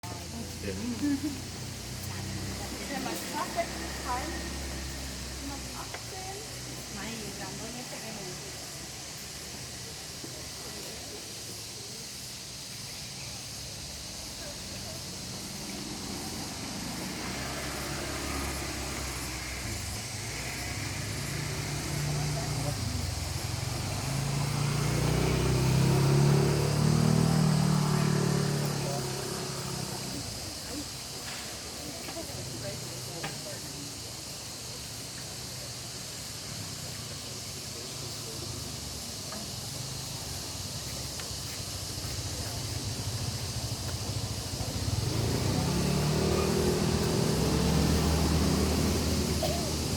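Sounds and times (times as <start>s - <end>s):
outdoor background noise: 0.0s - 49.9s
steady background hiss: 0.0s - 49.9s
low engine hum: 14.8s - 31.1s, 41.7s - 49.9s.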